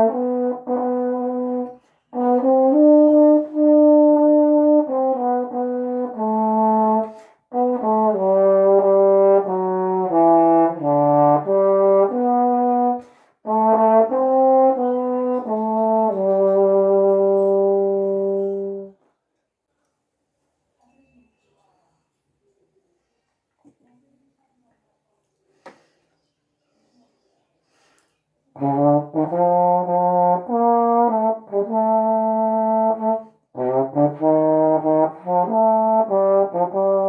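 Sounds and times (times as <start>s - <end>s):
solo trombone hymn melody: 0.0s - 19.0s, 28.6s - 37.0s.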